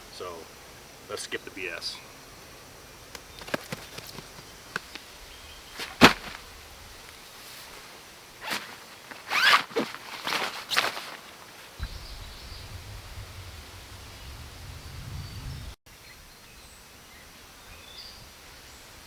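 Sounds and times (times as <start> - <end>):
packaging ripping and rustling: 5.8 - 6.4, 8.4 - 11.8
packaging snap: 5.8 - 6.4.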